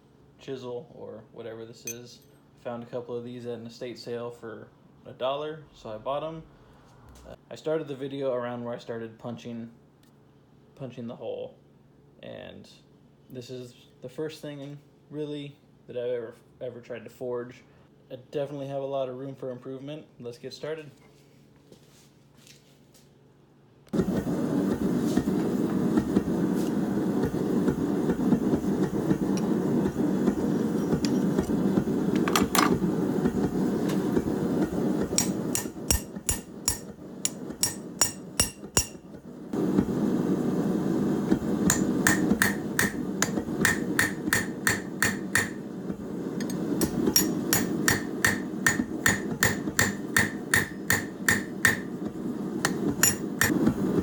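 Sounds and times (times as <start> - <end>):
hammer striking steel: 35.1 - 39.1, 41.7 - 45.6, 46.4 - 52.0, 52.6 - 53.6.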